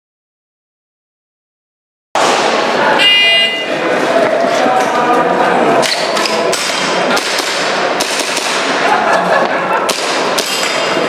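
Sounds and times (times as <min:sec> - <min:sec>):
background voices: 0:02.2 - 0:07.2
airsoft pistol shots: 0:06.5 - 0:08.8.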